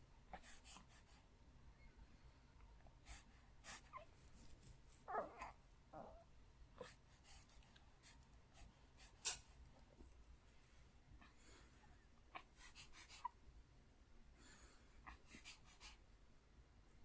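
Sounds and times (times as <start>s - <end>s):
soft breathing sounds: 0.2s - 5.2s, 6.7s - 13.4s, 14.2s - 16.2s
baby whimpering in sleep: 3.1s - 4.1s, 5.1s - 8.2s.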